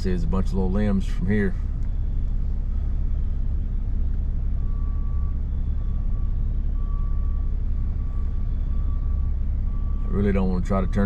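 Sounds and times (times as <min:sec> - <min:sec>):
vehicle engine idling: 0:00.0 - 0:11.0
reversing alarm beeping: 0:04.5 - 0:11.0.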